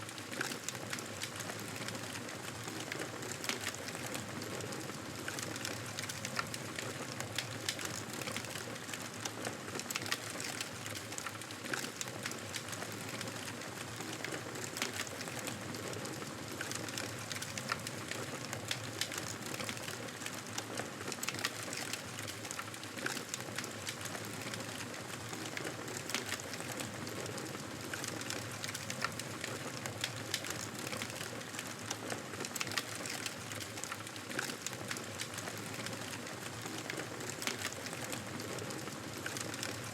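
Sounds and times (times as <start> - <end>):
campfire crackling and popping: 0.1 - 39.9.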